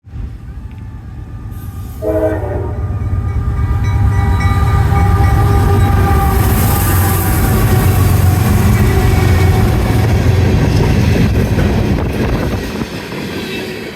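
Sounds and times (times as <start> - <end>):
locomotive rumble: 0.0 - 13.9
wheel and rail hiss: 0.5 - 2.4, 6.1 - 11.2
locomotive horn chord: 0.7 - 10.8.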